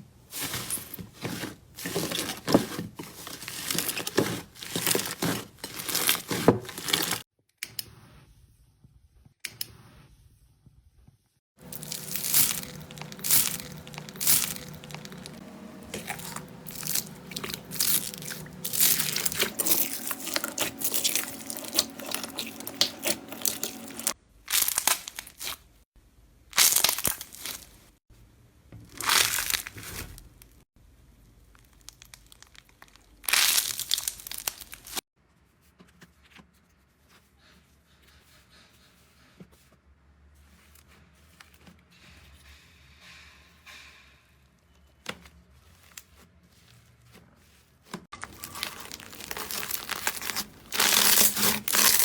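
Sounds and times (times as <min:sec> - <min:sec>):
slime crackling and crunching: 0:00.4 - 0:07.2, 0:11.6 - 0:25.6, 0:26.6 - 0:27.8, 0:28.9 - 0:30.2, 0:31.6 - 0:35.0, 0:48.2 - 0:52.0.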